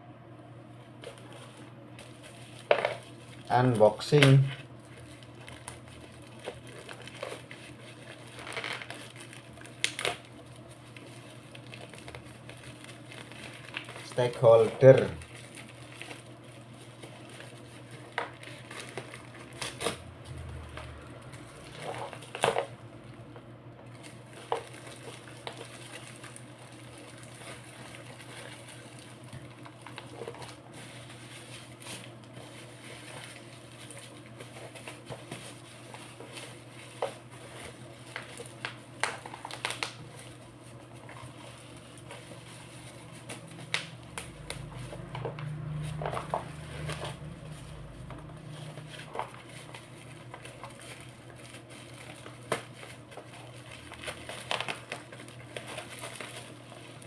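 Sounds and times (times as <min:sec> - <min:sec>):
steady low hum: 0:00.0 - 0:57.0
deeper hum: 0:18.4 - 0:24.4, 0:39.8 - 0:51.5.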